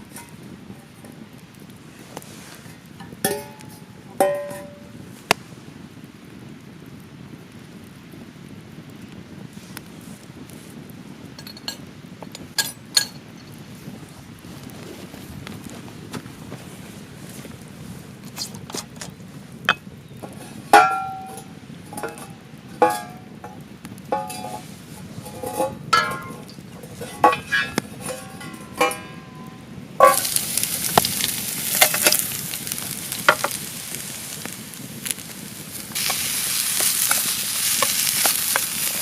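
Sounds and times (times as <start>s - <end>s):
food sizzling in hot pan: 0.0s - 5.0s, 19.7s - 39.0s
utensil knocking on metal pot: 3.3s - 3.6s, 4.2s - 4.8s.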